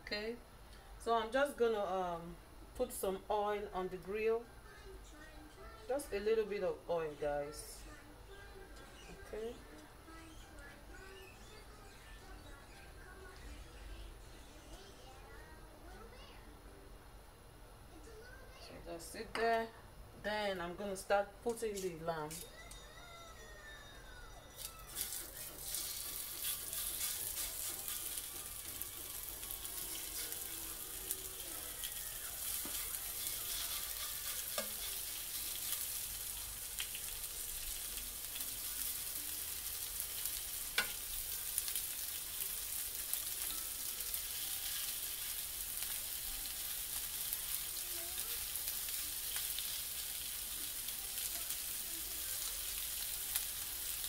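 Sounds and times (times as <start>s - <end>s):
meat sizzling on a grill: 24.6s - 54.0s.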